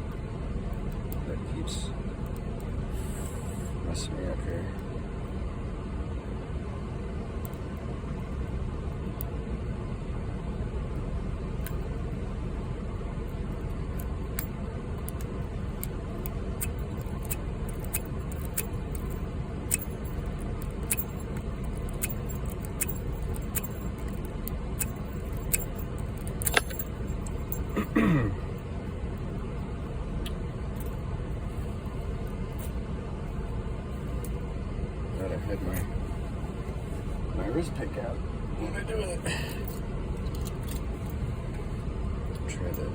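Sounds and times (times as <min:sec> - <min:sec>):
lock pick clicking in padlock: 0:14.0 - 0:27.7.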